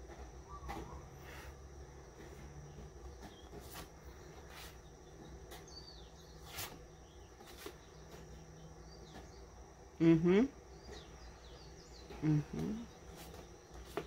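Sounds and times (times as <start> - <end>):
bird chirps: 0.4 - 1.5, 2.7 - 14.0
cards swishing by hand: 6.4 - 6.8.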